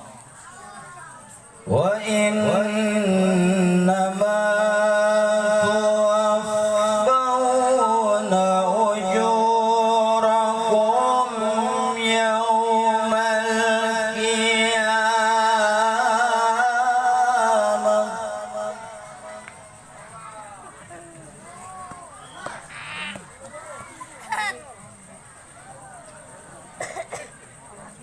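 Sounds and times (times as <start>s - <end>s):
man reciting melodically: 1.6s - 19.4s.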